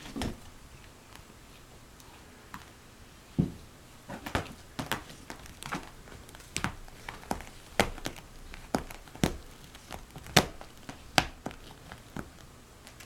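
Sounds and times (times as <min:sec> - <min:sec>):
light rustles and taps: 0:03.4 - 0:13.0.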